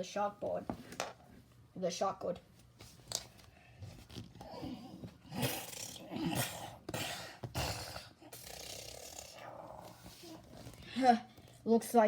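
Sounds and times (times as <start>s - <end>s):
person making non-word vocal noises: 4.4s - 11.2s.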